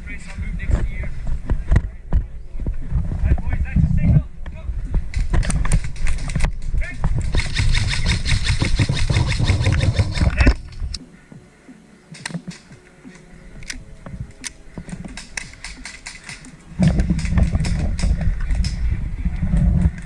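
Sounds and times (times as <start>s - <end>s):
wind rushing on camera microphone: 0.0s - 11.0s, 16.7s - 20.0s
rapid clicks and rattles: 5.1s - 11.0s, 14.8s - 18.8s
sharp clicks: 5.1s - 11.0s, 12.1s - 18.8s.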